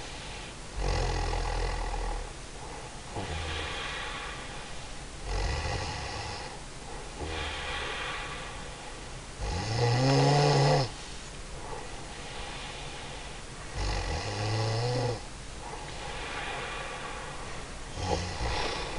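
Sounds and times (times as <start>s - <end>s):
woman snoring: 0.8s - 2.3s, 3.2s - 4.4s, 5.2s - 6.6s, 9.4s - 11.0s, 13.7s - 15.3s, 17.9s - 18.9s.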